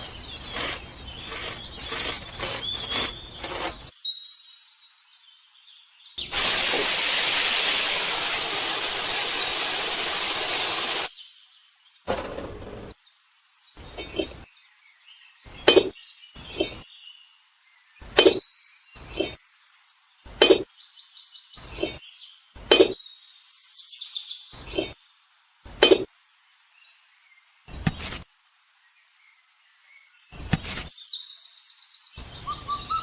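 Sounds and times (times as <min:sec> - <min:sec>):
small hard pieces clinking: 0:13.8 - 0:14.4.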